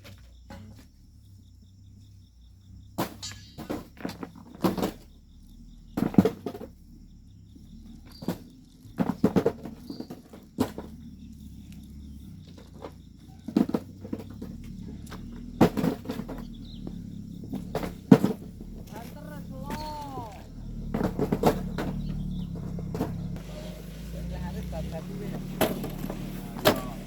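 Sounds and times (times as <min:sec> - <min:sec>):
hand tools digging sand and stones: 0:03.0 - 0:05.1, 0:07.6 - 0:27.0.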